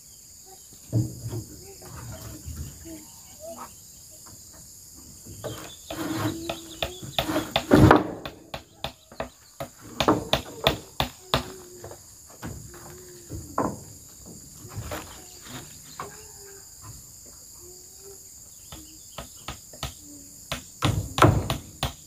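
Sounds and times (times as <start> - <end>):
crickets chirping: 0.0 - 22.0
knocks on metal roofing sheets: 5.5 - 11.6, 20.5 - 22.0.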